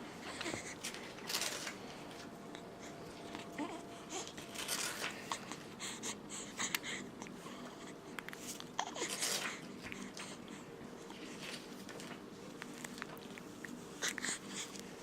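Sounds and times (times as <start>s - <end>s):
newborn baby breathy sounds: 0.1s - 1.0s, 2.6s - 11.5s, 13.9s - 15.0s.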